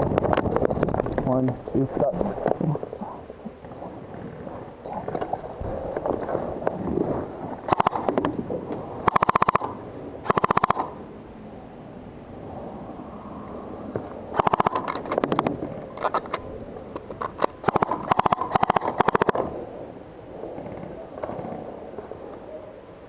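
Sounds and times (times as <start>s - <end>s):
outdoor background noise: 0.0s - 23.0s
airsoft guns firing bursts: 7.7s - 8.1s, 10.3s - 10.9s, 17.6s - 19.4s.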